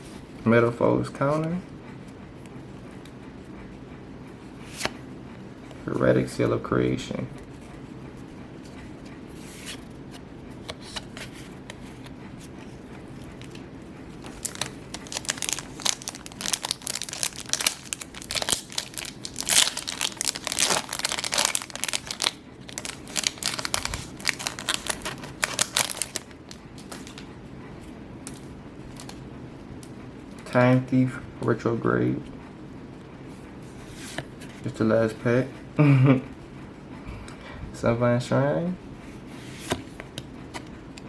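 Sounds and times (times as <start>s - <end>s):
steady low hum: 0.0s - 41.0s
foil wrapper crinkling and tearing: 14.2s - 27.2s.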